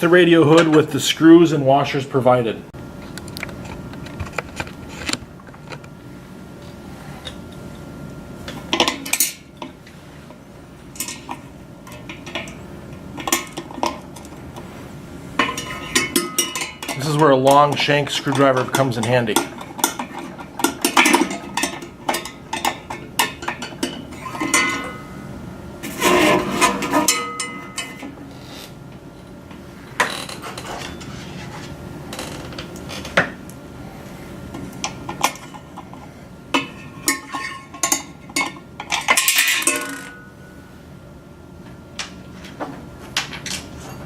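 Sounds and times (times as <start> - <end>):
scraping and rattling: 25.8 - 28.8.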